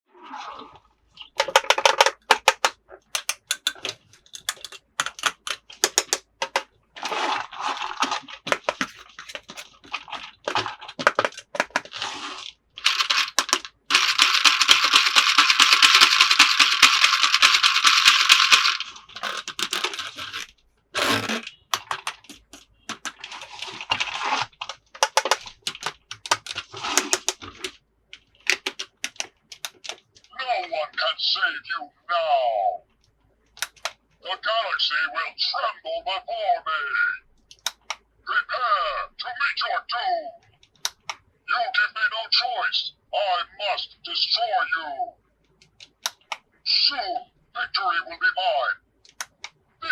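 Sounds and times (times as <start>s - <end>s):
plastic and cardboard crinkling: 1.4s - 30.3s
scratchy tearing: 19.2s - 25.4s.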